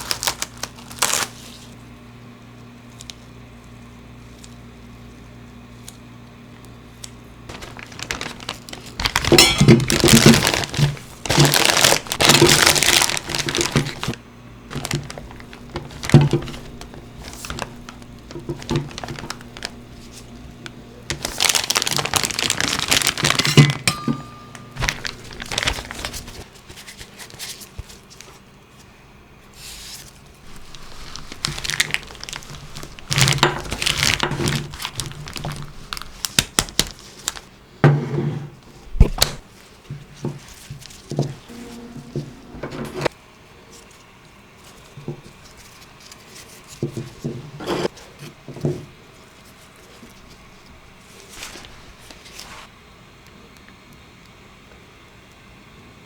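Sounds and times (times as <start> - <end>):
plastic or paper crinkling: 0.0 - 1.8, 6.9 - 28.4, 29.6 - 37.6, 38.8 - 43.1, 44.6 - 48.2, 49.1 - 52.7.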